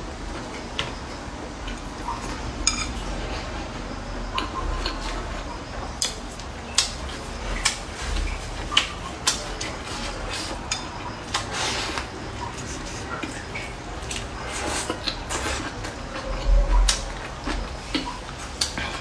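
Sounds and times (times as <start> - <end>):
chopsticks tapping bowls and plates: 2.6 - 3.0, 10.7 - 11.5.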